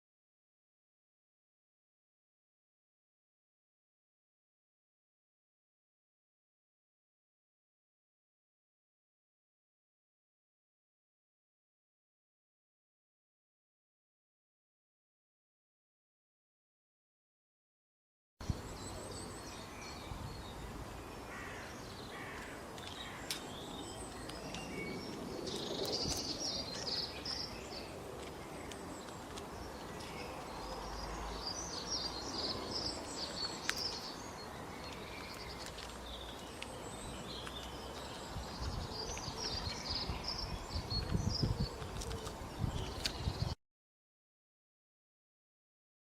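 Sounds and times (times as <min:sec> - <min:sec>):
outdoor background noise: 0:18.4 - 0:43.6
small birds chirping: 0:18.4 - 0:43.6.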